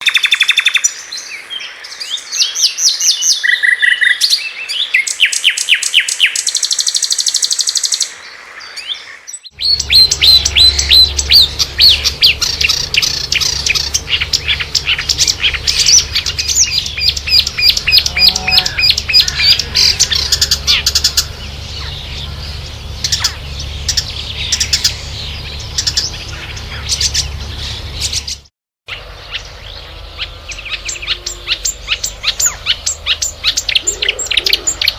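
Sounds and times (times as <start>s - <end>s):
warbler singing: 0.0s - 34.9s
low steady hum: 9.6s - 28.4s.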